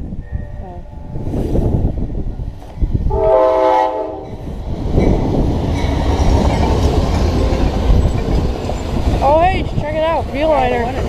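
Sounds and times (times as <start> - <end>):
train passing: 0.9 - 11.0
train horn: 3.1 - 4.4.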